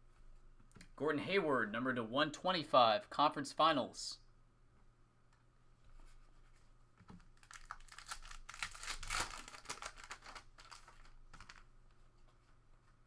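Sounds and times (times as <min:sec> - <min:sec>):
plastic wrapper crinkling and tearing: 0:07.1 - 0:11.8.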